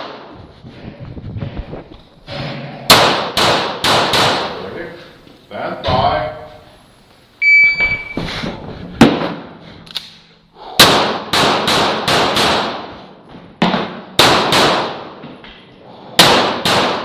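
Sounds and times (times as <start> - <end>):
rapid pistol shots: 2.9 - 4.6, 10.8 - 12.9, 14.1 - 15.2, 16.2 - 17.0
electronic timer beep: 7.4 - 8.2.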